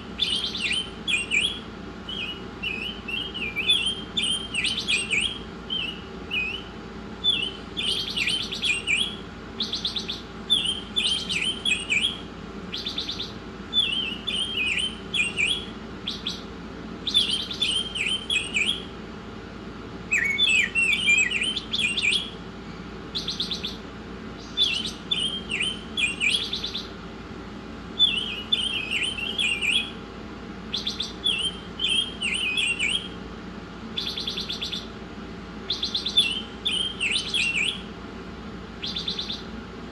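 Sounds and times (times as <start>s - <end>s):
songbird twittering: 0.0s - 19.0s, 20.0s - 27.0s, 28.0s - 30.0s, 30.6s - 33.2s, 33.9s - 35.0s, 35.6s - 38.0s, 38.8s - 39.6s
steady low hum: 0.0s - 39.9s.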